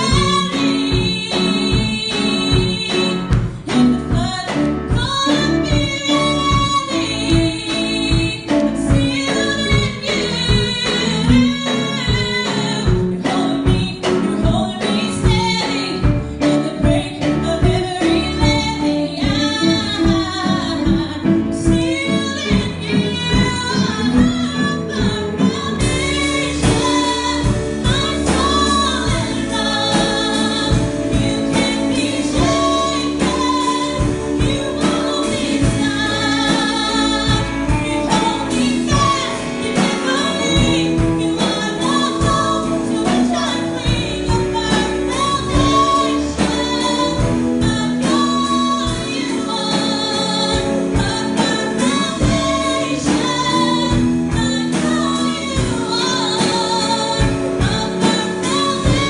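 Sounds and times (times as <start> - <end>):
instrumental backing with beat: 0.0 - 59.0
person singing worship song: 25.5 - 59.0.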